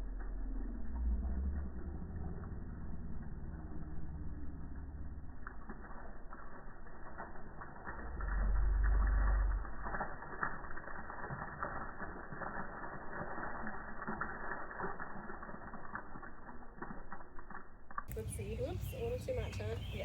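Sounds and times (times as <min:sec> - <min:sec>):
low rumble: 0:00.0 - 0:20.0.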